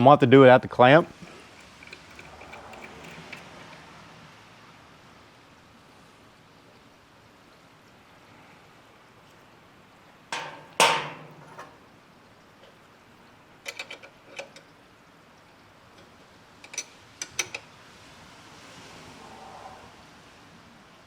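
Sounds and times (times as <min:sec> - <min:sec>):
metal tools knocking on clamp: 0:01.1 - 0:03.8, 0:10.3 - 0:11.8.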